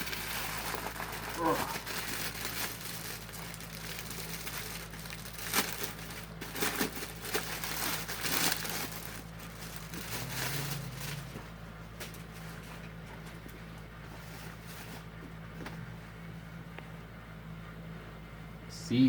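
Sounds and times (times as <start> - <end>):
plastic packaging crinkling: 0.0 - 12.8
steady low hum: 0.0 - 19.0.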